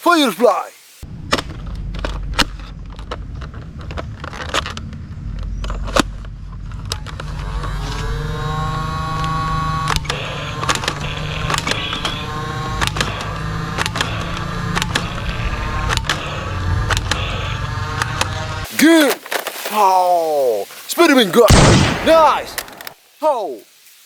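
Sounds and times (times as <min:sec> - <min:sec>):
small electric motor whirring: 0:07.2 - 0:18.7
rising whine: 0:07.3 - 0:18.6.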